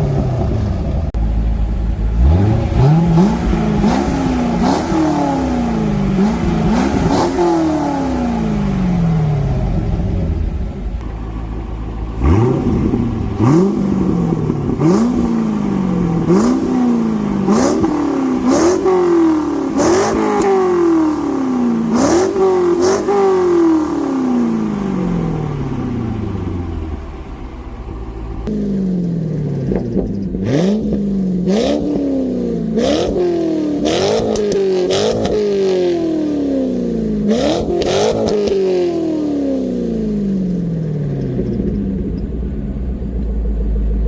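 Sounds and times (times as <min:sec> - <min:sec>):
car engine accelerating: 0:00.0 - 0:44.0
exhaust cracks at gear changes: 0:26.2 - 0:32.0, 0:33.8 - 0:35.4, 0:40.6 - 0:44.0.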